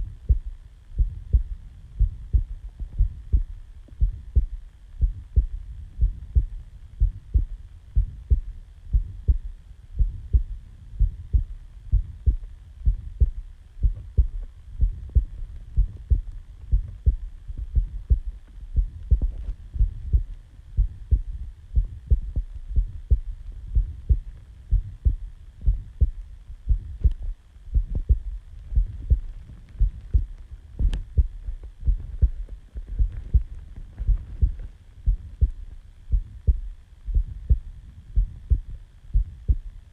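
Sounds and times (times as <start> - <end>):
heartbeat thumps: 0.0 - 39.8
faint hum: 0.0 - 39.9.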